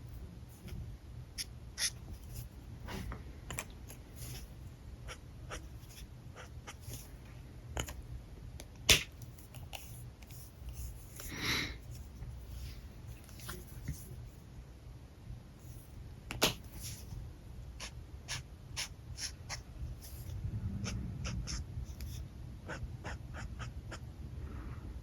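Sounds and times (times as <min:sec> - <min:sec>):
marker scratching on paper: 0:01.4 - 0:02.5, 0:17.8 - 0:24.0.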